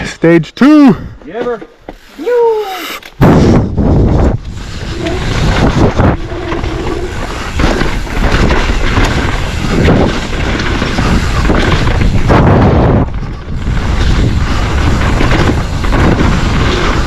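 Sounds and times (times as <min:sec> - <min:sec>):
wind buffeting microphone: 0:02.2 - 0:17.0
bike rattling over bumps: 0:03.1 - 0:17.0
tyres rumbling on dirt: 0:03.8 - 0:17.0.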